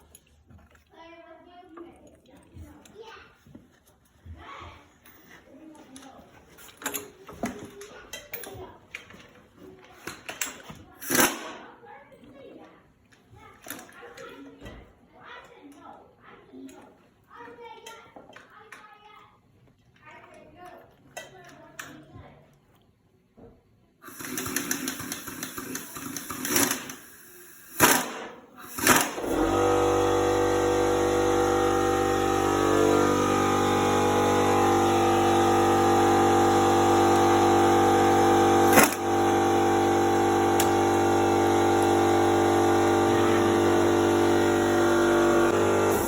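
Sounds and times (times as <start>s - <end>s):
motor running: 28.7s - 46.0s.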